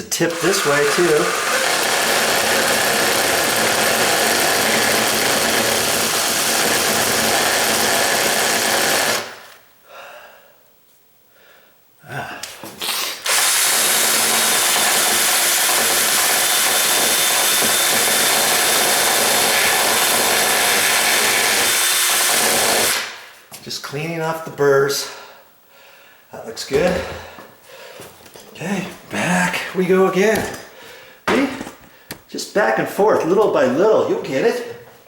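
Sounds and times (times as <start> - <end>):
power drill reaming wood: 0.2 - 9.6, 12.8 - 23.2.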